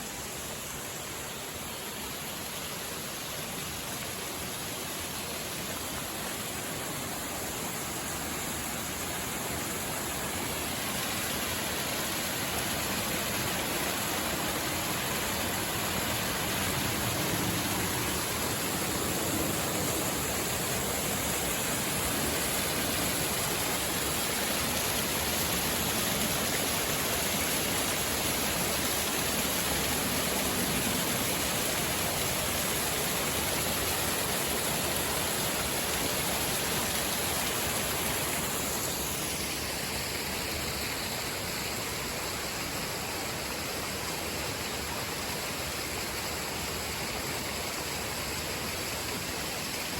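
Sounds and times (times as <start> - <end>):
stream and waterfall rushing: 0.0 - 49.9.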